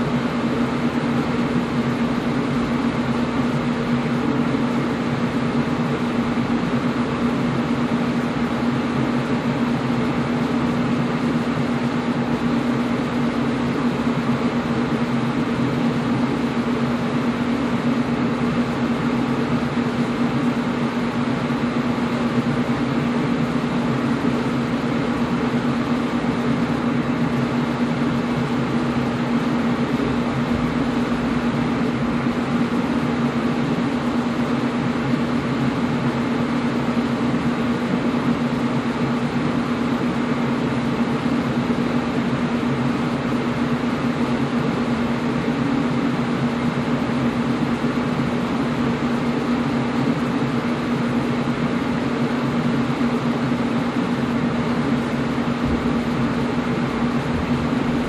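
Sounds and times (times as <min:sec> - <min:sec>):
low motor hum: 0:00.0 - 0:36.4, 0:54.3 - 0:58.0
air conditioner whoosh: 0:00.0 - 0:58.0.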